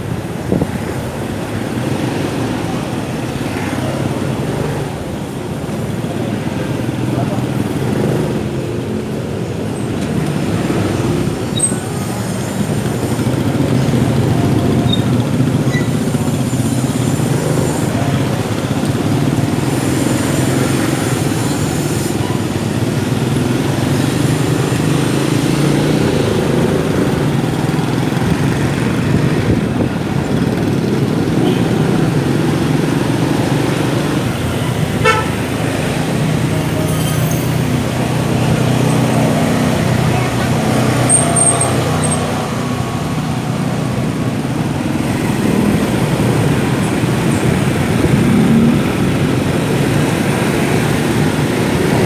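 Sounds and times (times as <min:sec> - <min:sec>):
city traffic: 0:00.0 - 0:52.0
road noise: 0:00.0 - 0:52.0
motorcycle engine running: 0:01.2 - 0:36.8.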